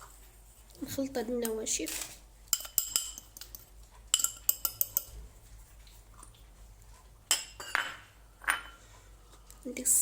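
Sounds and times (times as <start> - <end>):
spoon clinking against a bowl: 2.5 - 5.1.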